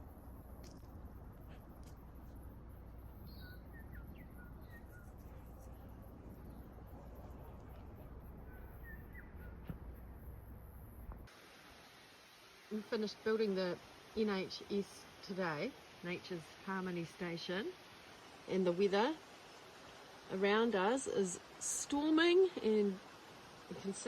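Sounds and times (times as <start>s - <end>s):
low rumble and hiss: 0.0s - 24.0s
small bird chirps: 3.0s - 9.7s.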